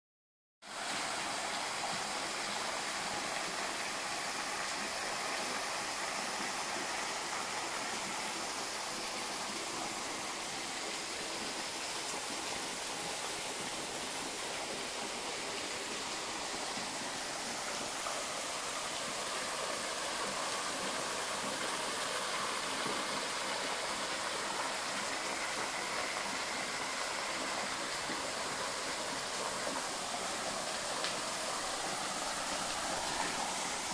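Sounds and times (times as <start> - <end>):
mountain river rushing: 0.7 - 33.9.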